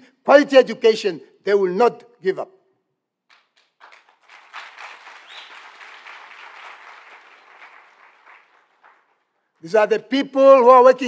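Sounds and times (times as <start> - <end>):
audience applauding: 3.3 - 9.6.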